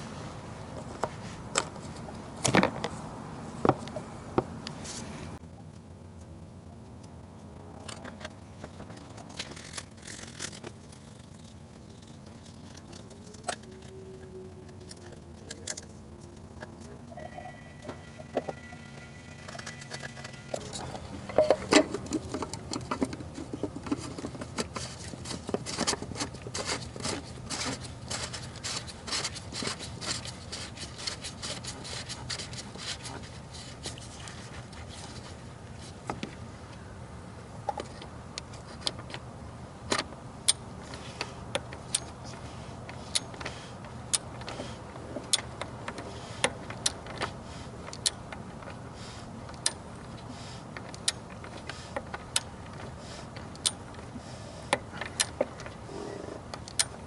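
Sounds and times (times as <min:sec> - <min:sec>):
faint low hum: 0:03.1 - 0:25.4
metal parts and tools clinking: 0:17.2 - 0:24.1.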